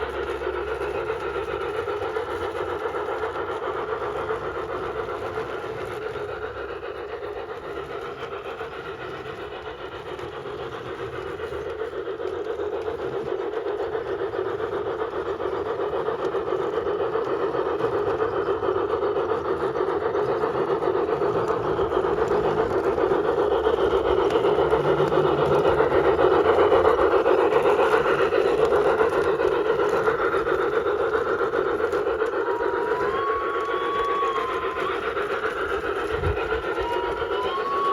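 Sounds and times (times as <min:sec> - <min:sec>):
model train motor humming: 0:00.0 - 0:37.9.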